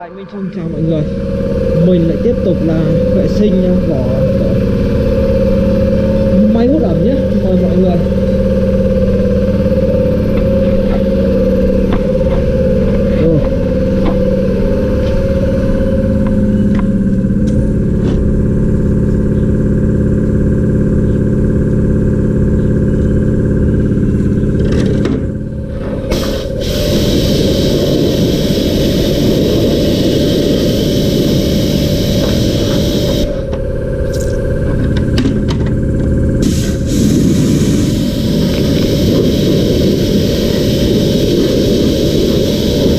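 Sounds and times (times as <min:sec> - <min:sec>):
motor running steadily: 0:00.0 - 0:42.9
loud rushing hiss: 0:26.1 - 0:33.4, 0:36.4 - 0:42.9.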